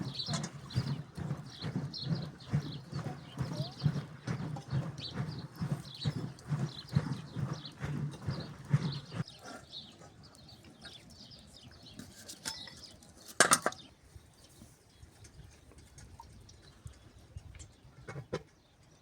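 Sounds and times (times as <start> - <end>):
rhythmic low thuds: 0.0 - 9.2.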